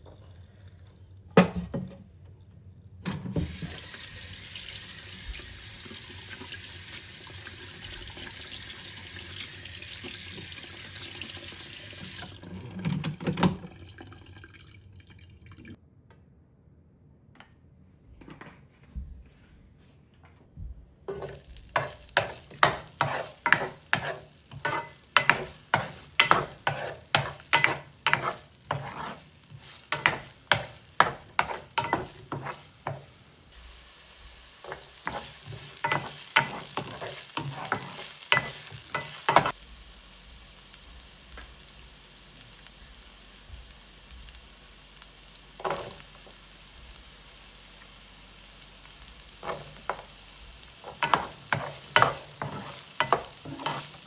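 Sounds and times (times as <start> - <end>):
food sizzling in a pan: 3.4 - 12.8, 21.1 - 54.0.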